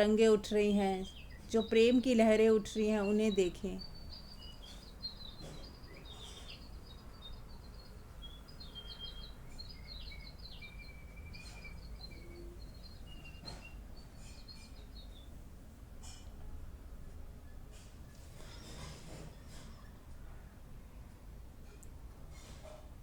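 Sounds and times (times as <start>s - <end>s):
small birds chirping: 0.0s - 16.2s
low background noise: 0.0s - 23.0s.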